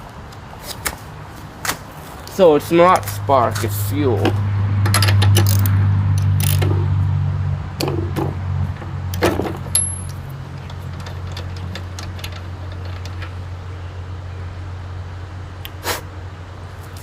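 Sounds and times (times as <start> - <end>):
metallic tool clicks and clinks: 4.9 - 6.7.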